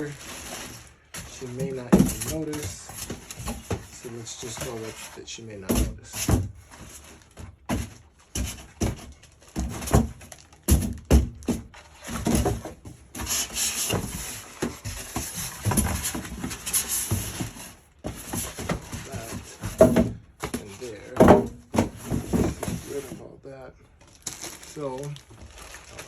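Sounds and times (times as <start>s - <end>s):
knocks and clunks of handled parts: 0.0s - 23.2s
packaging rustling: 24.0s - 26.0s.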